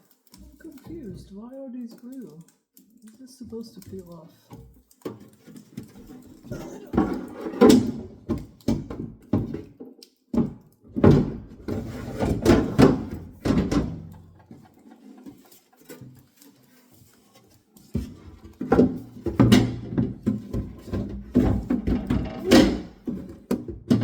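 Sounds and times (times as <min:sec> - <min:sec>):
knocking and thunks: 0:10.4 - 0:14.1, 0:18.0 - 0:24.0
scraping of parts: 0:11.6 - 0:24.0.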